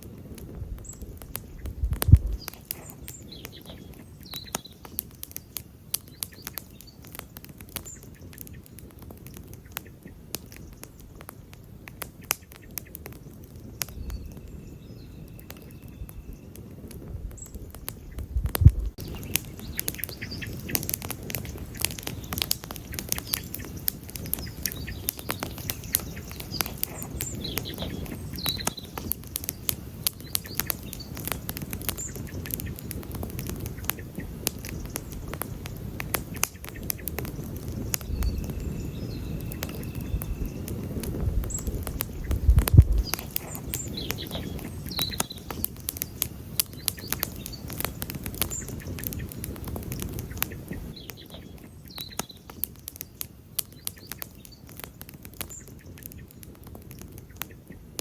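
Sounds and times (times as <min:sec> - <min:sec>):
campfire crackling and popping: 0:00.0 - 0:58.0
low rumble: 0:01.6 - 0:02.4, 0:17.1 - 0:19.0
faint high chirps: 0:13.7 - 0:16.7, 0:37.7 - 0:45.7.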